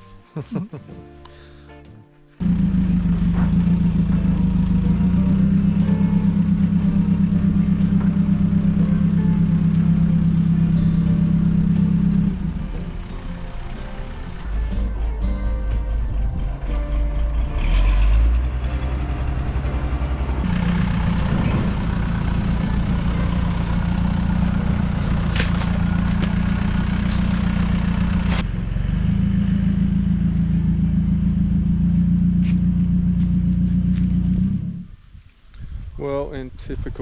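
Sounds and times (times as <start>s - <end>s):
engine running steadily: 2.4s - 35.0s
clicks and clatter: 15.7s - 30.8s.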